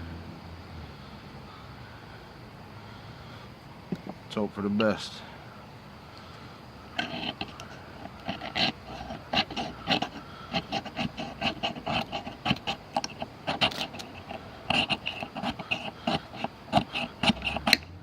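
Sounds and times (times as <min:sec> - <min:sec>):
file scraping ferro rod: 0:07.0 - 0:17.9.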